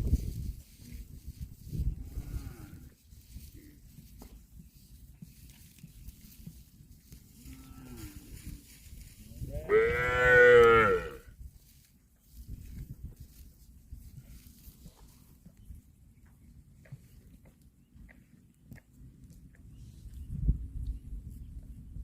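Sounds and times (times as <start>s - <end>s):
cow mooing: 7.4s - 8.3s, 9.6s - 11.2s.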